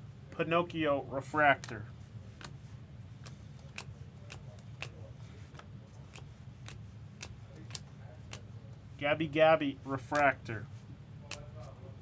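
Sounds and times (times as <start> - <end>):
low steady hum: 0.0 - 12.0
trading cards clicking: 3.2 - 8.5, 10.1 - 10.4.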